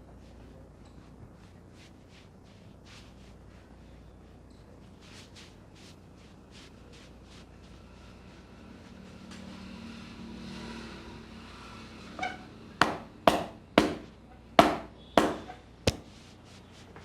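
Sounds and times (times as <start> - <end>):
hands rubbing head: 1.4 - 3.7, 15.2 - 16.0
sharp hand slaps: 12.8 - 16.1.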